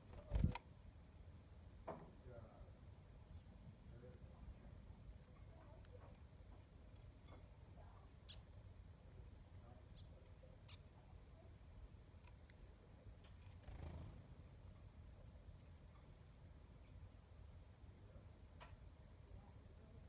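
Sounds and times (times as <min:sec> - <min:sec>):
small birds chirping: 0:00.0 - 0:00.6, 0:02.2 - 0:17.5.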